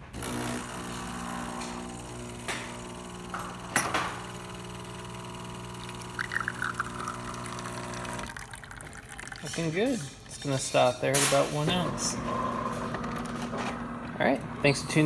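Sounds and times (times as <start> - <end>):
espresso machine pump humming: 0.2 - 10.5, 11.7 - 15.0
gurgling sputter: 5.9 - 9.6.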